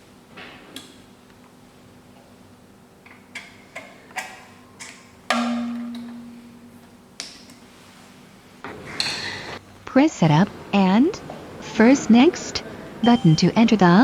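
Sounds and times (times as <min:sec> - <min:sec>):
loud knock with low ring: 0:05.3 - 0:06.9.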